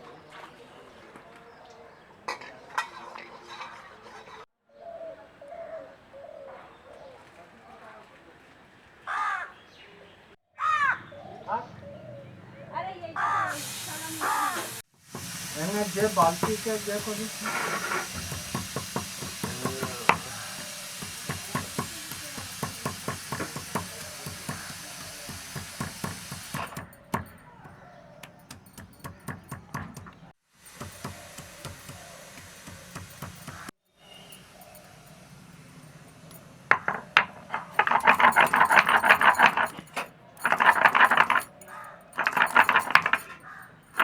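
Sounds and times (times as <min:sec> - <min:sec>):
metal clattering and scraping: 0:02.3 - 0:04.4, 0:15.2 - 0:27.6, 0:34.5 - 0:44.0.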